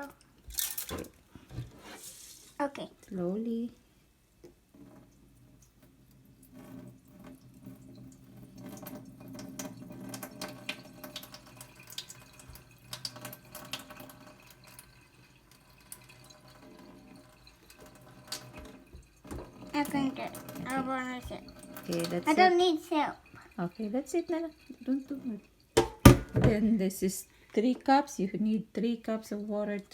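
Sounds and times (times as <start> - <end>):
rice rinsed in pot: 4.6 - 26.9
water splashing into sink: 4.8 - 26.8.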